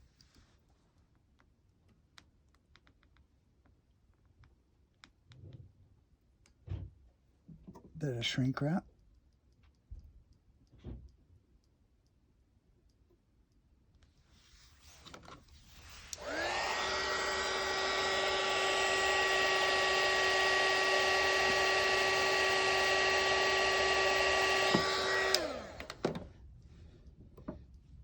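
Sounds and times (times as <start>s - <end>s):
hot-air blower whining: 15.8s - 26.3s.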